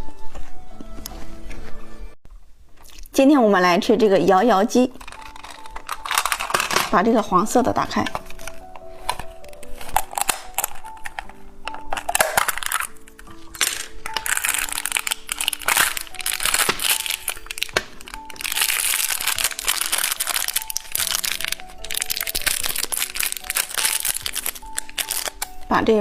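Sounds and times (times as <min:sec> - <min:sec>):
background music simple melody: 0:00.0 - 0:26.0
plastic packaging crinkling: 0:04.9 - 0:25.6.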